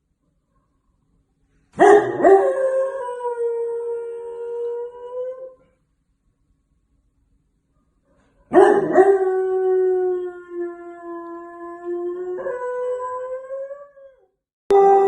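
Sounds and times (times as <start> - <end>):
dog howling: 8.6 - 15.0.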